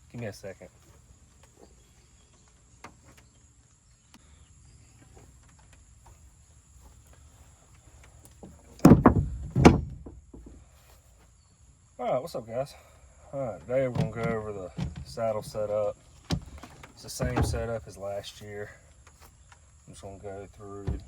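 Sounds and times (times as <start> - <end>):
loud heavy thumps: 8.8 - 10.6, 13.9 - 15.6, 16.3 - 17.9, 20.8 - 21.0.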